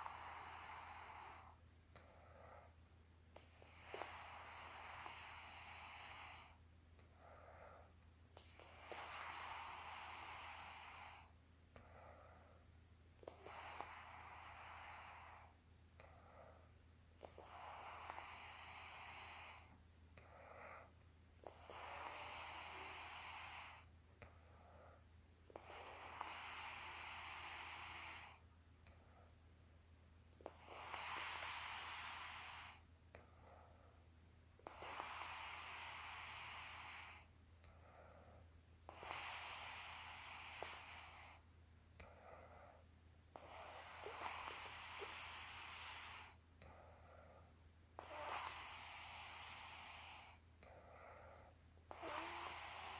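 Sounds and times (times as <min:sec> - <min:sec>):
woman snoring: 0:00.0 - 0:01.6, 0:03.4 - 0:06.6, 0:08.4 - 0:11.4, 0:13.2 - 0:15.6, 0:17.2 - 0:23.9, 0:25.5 - 0:28.4, 0:30.4 - 0:32.8, 0:34.6 - 0:37.3, 0:38.8 - 0:46.8, 0:48.0 - 0:52.9.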